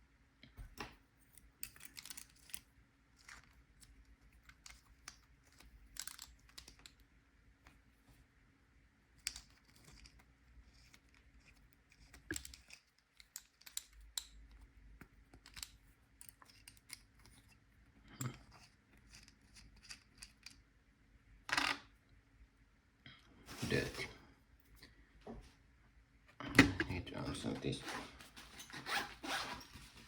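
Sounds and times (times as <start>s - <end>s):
metal tools clicking and scraping: 1.6s - 3.5s, 4.4s - 7.0s, 9.2s - 14.7s, 15.3s - 17.6s, 18.2s - 20.6s.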